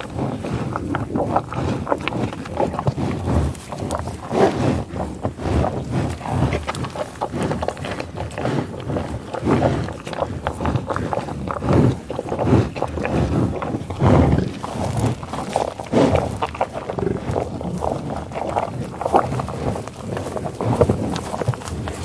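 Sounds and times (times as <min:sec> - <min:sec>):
bison grunts: 0:00.0 - 0:22.0
sniffling breaths: 0:08.4 - 0:15.2
rustling and tearing grass: 0:12.5 - 0:22.0.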